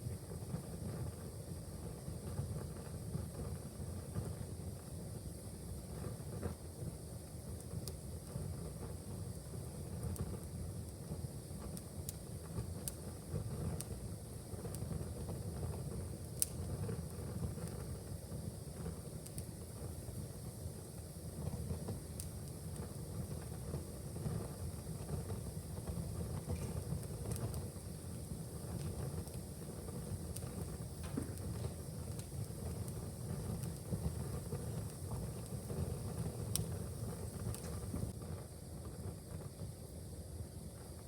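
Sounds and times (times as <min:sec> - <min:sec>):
low rumble of flames: 0:00.0 - 0:41.0
wood fire pops and snaps: 0:05.8 - 0:38.2.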